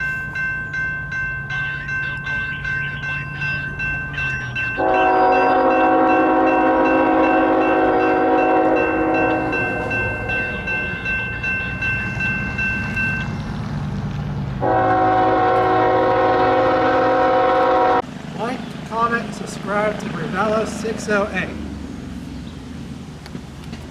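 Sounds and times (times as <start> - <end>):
passing train rumble: 0.0 - 23.9
locomotive air horn blasts: 4.8 - 11.1, 14.6 - 18.1.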